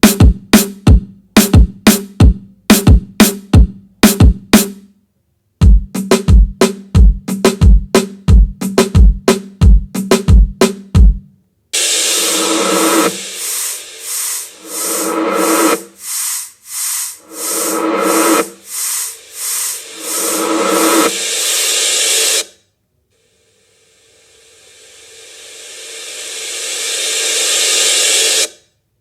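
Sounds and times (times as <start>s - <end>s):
drum beat thumps: 0.0s - 4.8s, 5.6s - 21.4s
loud pulsing hiss: 11.8s - 22.6s, 23.2s - 28.6s.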